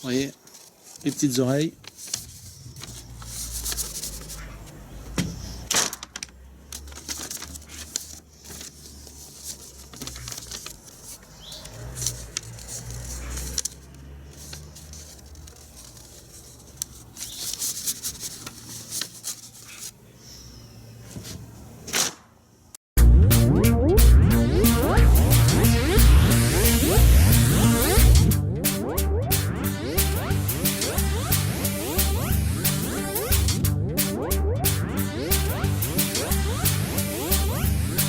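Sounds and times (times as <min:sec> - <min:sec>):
paper rustling and crackling: 0:00.0 - 0:20.0
paper snapping: 0:00.4 - 0:04.5, 0:05.2 - 0:19.8.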